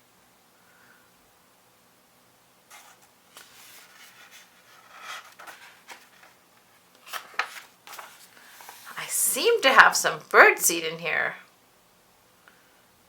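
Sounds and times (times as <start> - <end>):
paper rustling and crinkling: 2.7 - 9.0.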